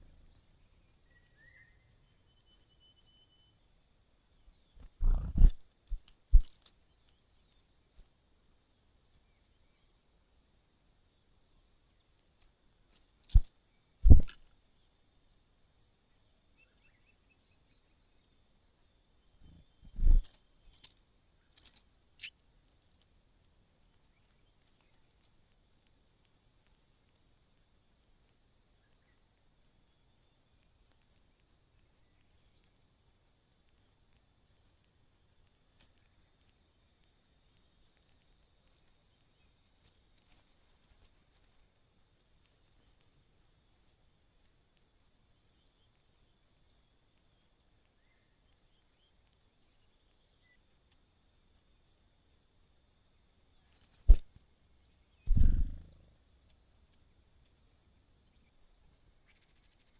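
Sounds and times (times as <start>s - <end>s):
nestling chirping: 4.8s - 6.6s, 14.0s - 14.4s, 19.5s - 20.3s, 53.8s - 54.2s, 55.3s - 56.1s.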